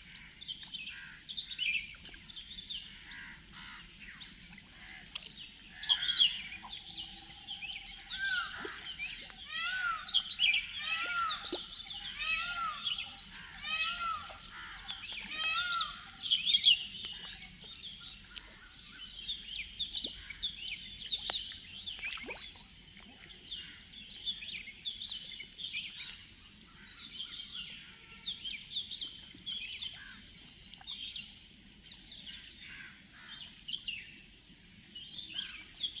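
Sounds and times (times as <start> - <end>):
birds chirping and calling: 1.0 - 22.3
loud arching bird call: 7.9 - 16.5.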